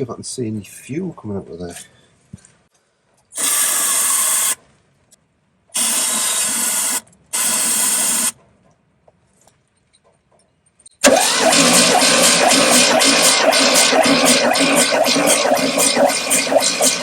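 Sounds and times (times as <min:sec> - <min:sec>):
car engine cranking on starter motor: 0:11.0 - 0:17.0.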